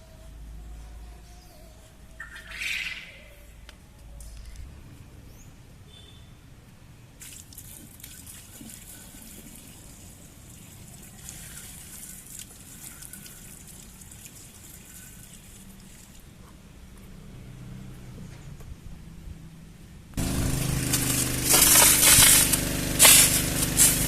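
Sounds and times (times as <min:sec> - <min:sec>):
sprinkler spray hissing: 0:20.2 - 0:24.0.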